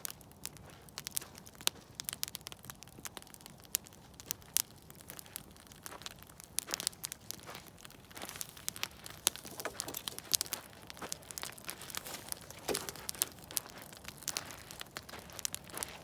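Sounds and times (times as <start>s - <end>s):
campfire crackling and popping: 0.0s - 16.0s.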